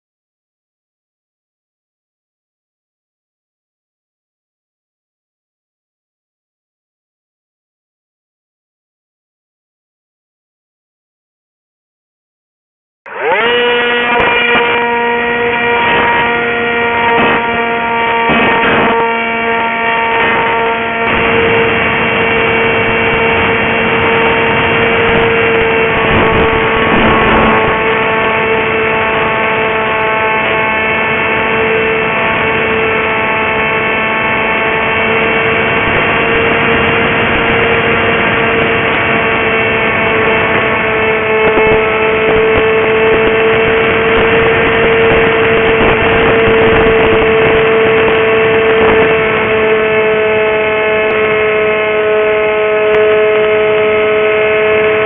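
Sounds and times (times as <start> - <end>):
electric propeller drone: 13.1 - 55.0
wind gusts on microphone: 20.2 - 29.6, 30.4 - 51.3.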